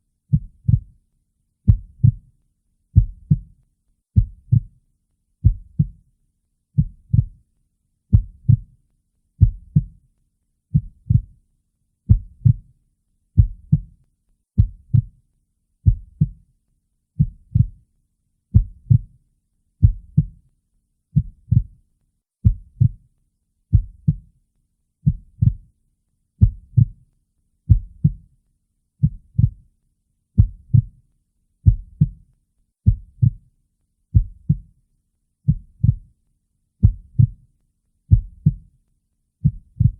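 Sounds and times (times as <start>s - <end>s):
heartbeat: 0.3s - 0.9s, 1.7s - 2.2s, 3.0s - 3.5s, 4.2s - 4.7s, 5.4s - 6.0s, 6.8s - 7.4s, 8.1s - 8.7s, 9.4s - 10.0s, 10.7s - 11.4s, 12.1s - 12.7s, 13.4s - 13.9s, 14.6s - 15.2s, 15.8s - 16.4s, 17.2s - 17.8s, 18.5s - 19.1s, 19.8s - 20.4s, 21.2s - 21.8s, 22.4s - 23.0s, 23.7s - 24.2s, 25.0s - 25.7s, 26.4s - 27.0s, 27.7s - 28.2s, 29.0s - 29.6s, 30.4s - 31.0s, 31.6s - 32.2s, 32.8s - 33.4s, 34.1s - 34.7s, 35.5s - 36.1s, 36.8s - 37.4s, 38.1s - 38.6s, 39.4s - 39.9s.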